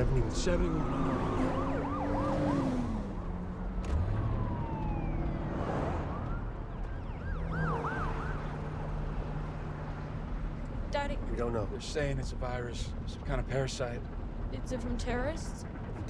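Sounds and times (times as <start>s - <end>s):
emergency vehicle sirens: 0.0s - 11.1s
car engine hum: 0.0s - 16.0s.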